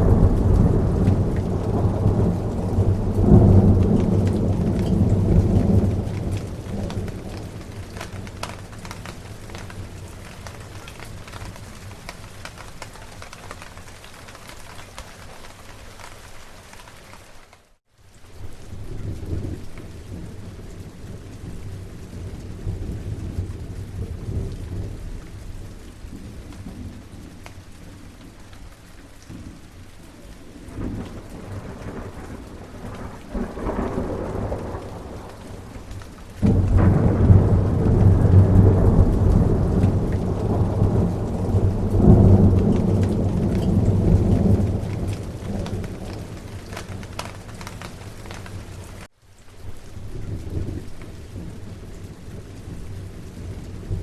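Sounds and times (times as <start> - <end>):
rolling thunder: 0.0 - 13.3, 30.5 - 49.0
steady rain: 0.0 - 54.0.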